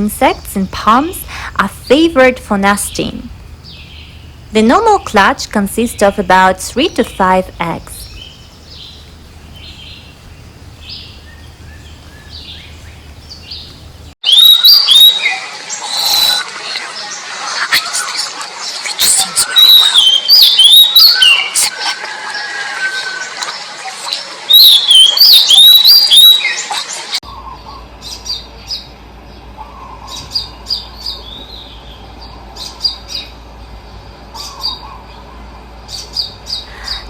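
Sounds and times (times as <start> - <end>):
birds singing and calling: 0.0 - 37.0
short high bird chirps: 24.5 - 26.5.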